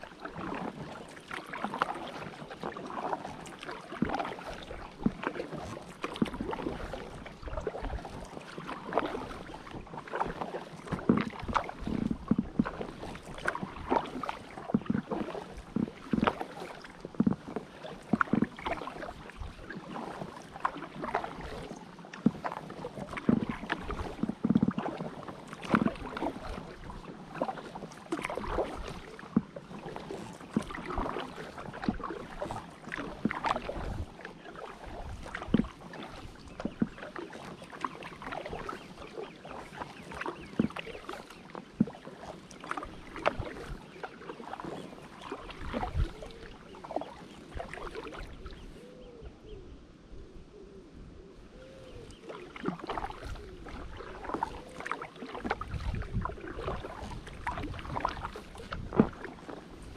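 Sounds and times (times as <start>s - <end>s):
paddle splashing: 0.0s - 49.6s, 51.3s - 59.9s
water lapping against hull: 0.0s - 59.9s
wind rumble on microphone: 45.3s - 47.0s, 55.4s - 59.9s.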